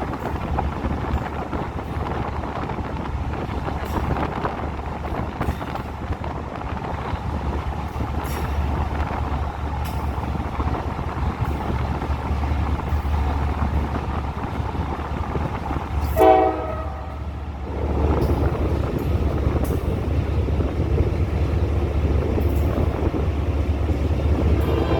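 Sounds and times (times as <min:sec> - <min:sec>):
train rumbling: 0:00.0 - 0:24.9
train horn blast: 0:16.1 - 0:17.4, 0:24.5 - 0:24.9.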